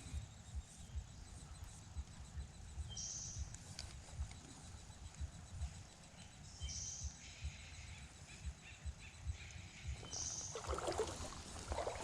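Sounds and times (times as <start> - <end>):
bird chirps: 0.0 - 12.0.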